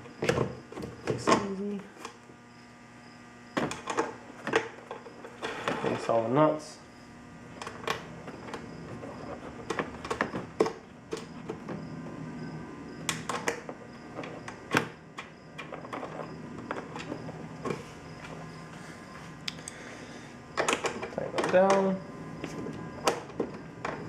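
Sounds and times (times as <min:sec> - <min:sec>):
hardware clicks and knocks: 0:20.6 - 0:24.0.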